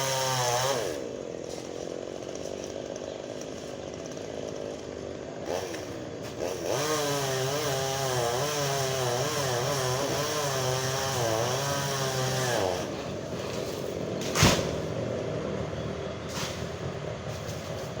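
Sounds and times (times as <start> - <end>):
chainsaw engine running: 0.0 - 18.0
loud thump: 14.3 - 14.9.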